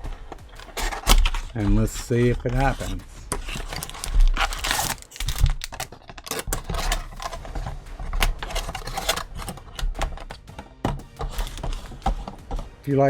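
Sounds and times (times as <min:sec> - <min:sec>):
foil packs crinkling: 0:00.0 - 0:12.7
card packs being opened by hand: 0:00.0 - 0:13.0.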